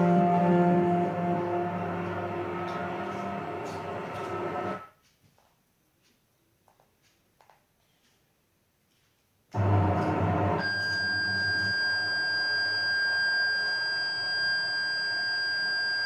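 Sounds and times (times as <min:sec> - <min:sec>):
noisy hum: 0:00.0 - 0:04.9.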